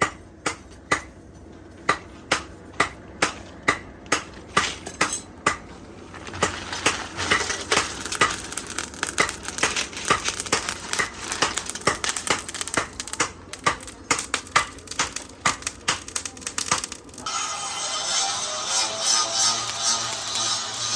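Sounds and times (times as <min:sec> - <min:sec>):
hammer striking steel: 0:00.0 - 0:01.2, 0:01.8 - 0:05.7, 0:06.4 - 0:20.9
rasping noise: 0:17.2 - 0:20.9.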